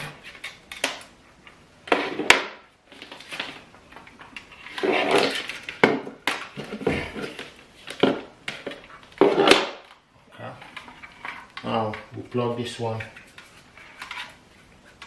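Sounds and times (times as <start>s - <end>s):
scraping and rustling: 2.9s - 9.8s, 12.7s - 15.0s.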